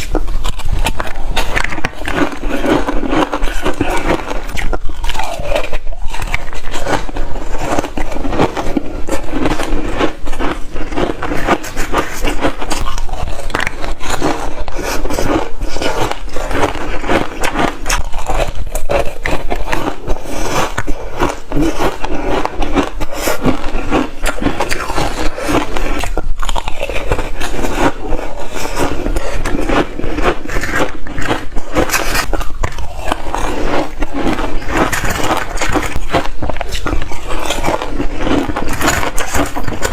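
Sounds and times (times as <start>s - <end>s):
chewing hard ice: 0.0s - 39.9s.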